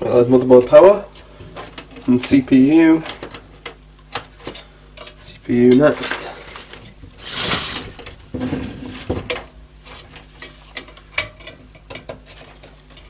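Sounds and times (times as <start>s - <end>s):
scraping: 5.8s - 10.6s.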